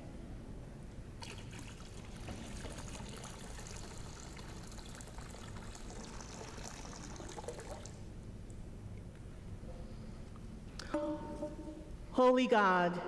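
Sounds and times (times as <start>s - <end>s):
water pouring into a font: 1.2s - 8.0s.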